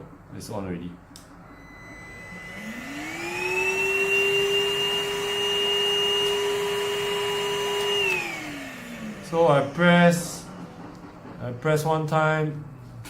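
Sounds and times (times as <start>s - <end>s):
vacuum cleaner motor whine: 1.4s - 13.0s.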